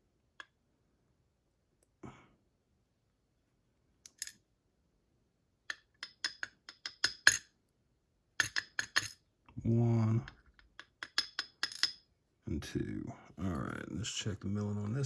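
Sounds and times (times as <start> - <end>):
small metallic clicks and clinks: 4.0 - 4.4, 5.7 - 7.5, 8.4 - 9.2, 10.2 - 12.1.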